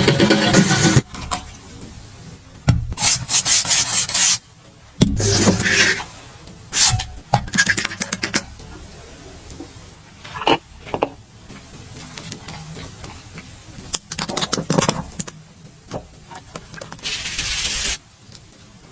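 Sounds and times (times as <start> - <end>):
rubbing and scraping: 0.0 - 1.3, 17.0 - 18.0.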